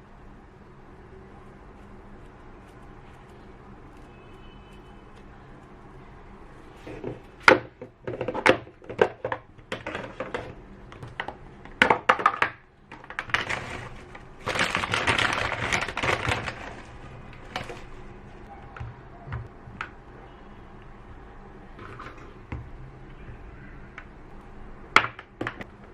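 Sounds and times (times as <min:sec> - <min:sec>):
handling noise: 0:01.7 - 0:20.0.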